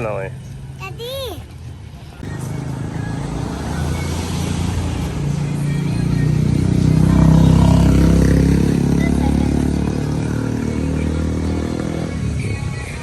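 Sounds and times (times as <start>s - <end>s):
motorcycle engine running: 1.5s - 13.0s.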